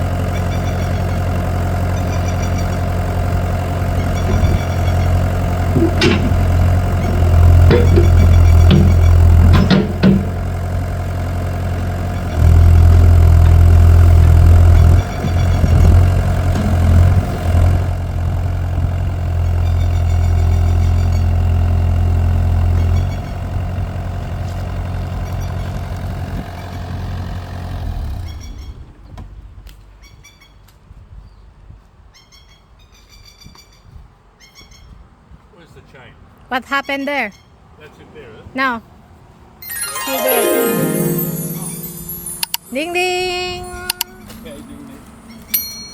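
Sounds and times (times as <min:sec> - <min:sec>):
motor humming: 0:03.7 - 0:19.8.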